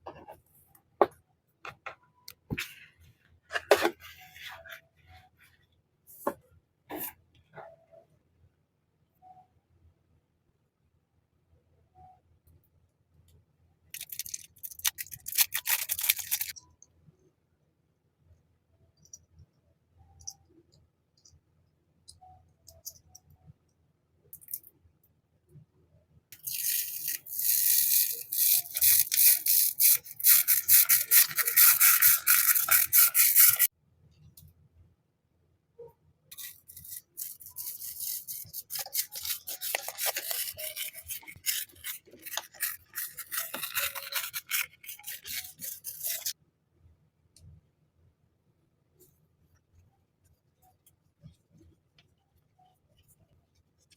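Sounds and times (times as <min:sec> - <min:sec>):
rapid rubbing strokes on surface: 0:27.8 - 0:33.7.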